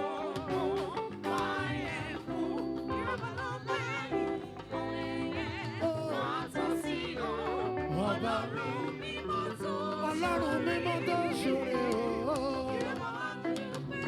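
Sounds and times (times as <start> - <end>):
person singing with vibrato: 0.0 - 14.0.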